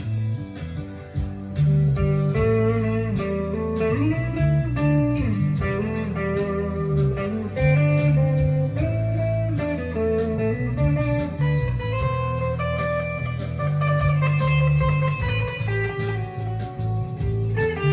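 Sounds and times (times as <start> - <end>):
fuzz electric guitar lead: 0.0 - 17.9.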